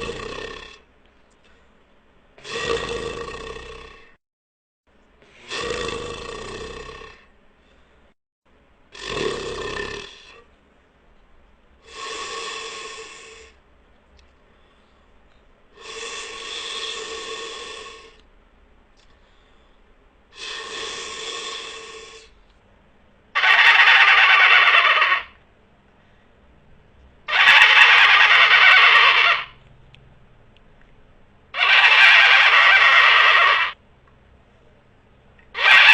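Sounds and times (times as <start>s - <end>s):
horse snorting blows: 0.0s - 0.8s, 2.4s - 4.1s, 5.3s - 7.3s, 8.9s - 10.4s.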